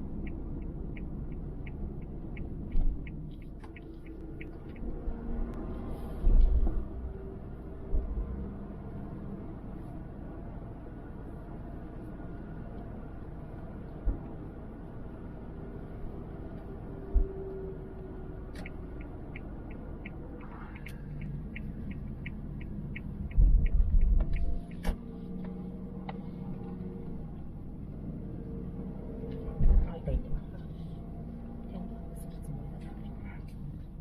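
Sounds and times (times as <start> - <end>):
regular ticking: 0.0 - 5.0, 18.6 - 24.8
car rumbling inside cabin: 0.0 - 34.0.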